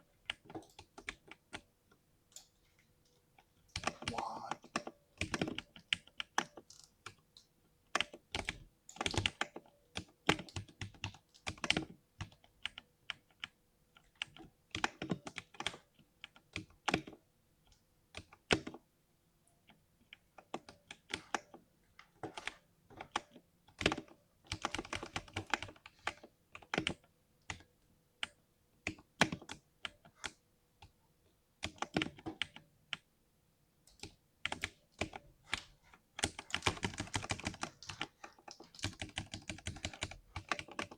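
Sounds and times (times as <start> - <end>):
mechanical keyboard typing: 8.0 - 12.8, 22.3 - 27.6, 33.9 - 40.9.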